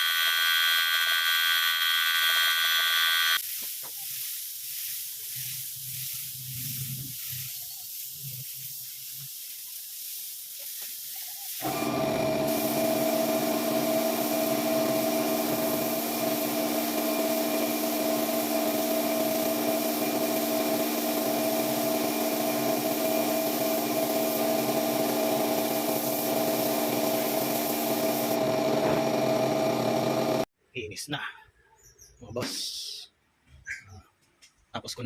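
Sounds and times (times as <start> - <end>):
power polisher motor whine: 0.0 - 3.4, 11.6 - 19.4
polisher rubbing hiss: 3.4 - 29.0.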